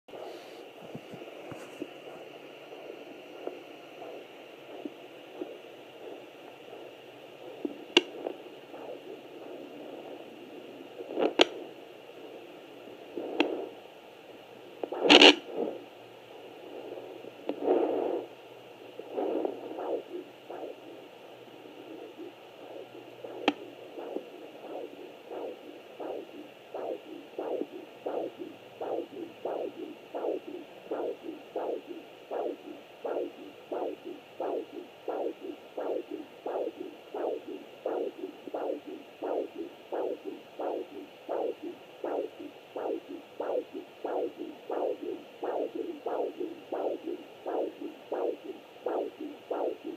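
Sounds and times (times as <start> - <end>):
fetal heartbeat whooshing pulse: 0.1 - 13.8, 14.6 - 49.9
click: 11.2 - 11.6.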